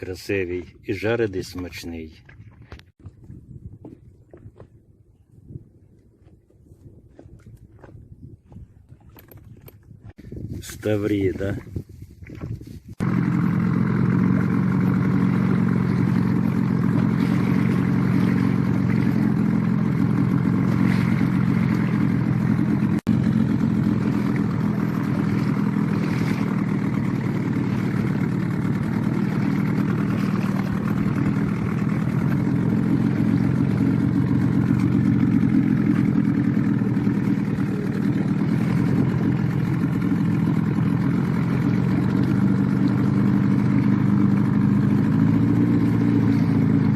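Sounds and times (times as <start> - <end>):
boat motor droning: 12.3 - 46.9.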